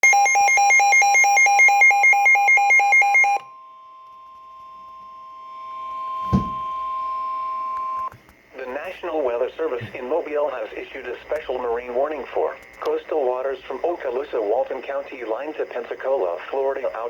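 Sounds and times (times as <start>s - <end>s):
steady alarm tone: 0.0s - 8.1s.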